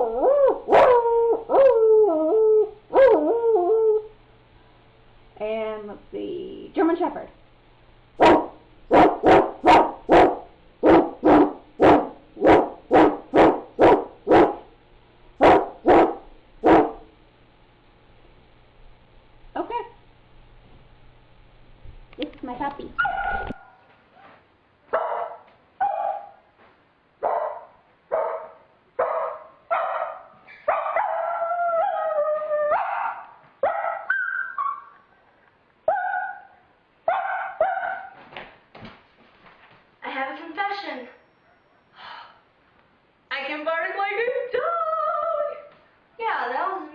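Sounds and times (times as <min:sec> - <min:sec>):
woman imitating dog barks: 0:37.1 - 0:38.2.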